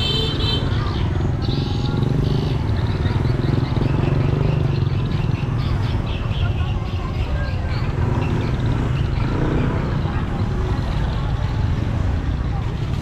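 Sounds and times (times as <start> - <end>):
motorbike engine humming: 0.0 - 13.0
street noise: 0.0 - 13.0.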